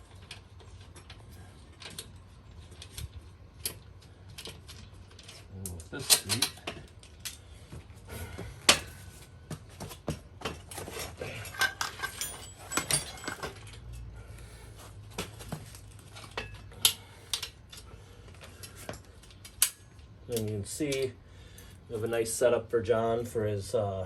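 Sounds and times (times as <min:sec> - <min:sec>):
metallic tool clinks and knocks: 0:11.4 - 0:14.1.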